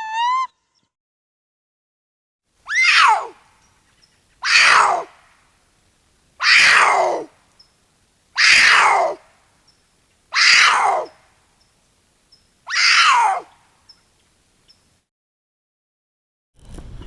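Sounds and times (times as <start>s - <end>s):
cougar screaming: 0.0s - 0.5s, 2.7s - 3.4s, 4.4s - 5.1s, 6.4s - 7.3s, 8.4s - 9.2s, 10.3s - 11.2s, 12.7s - 13.5s.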